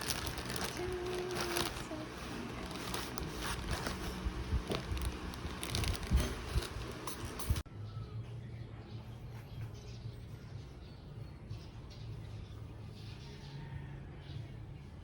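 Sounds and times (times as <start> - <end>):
low background hum: 0.0 - 11.3.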